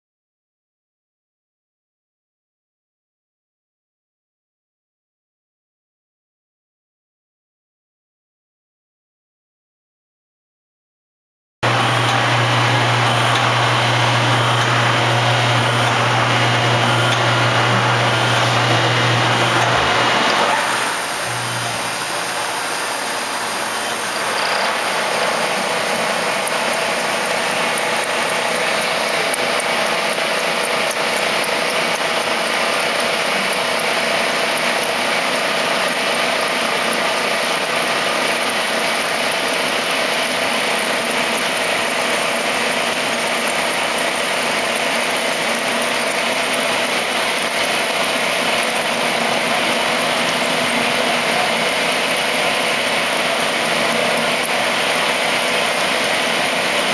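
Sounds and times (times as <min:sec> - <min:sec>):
milling machine cutting aluminium: 0:11.6 - 0:56.9.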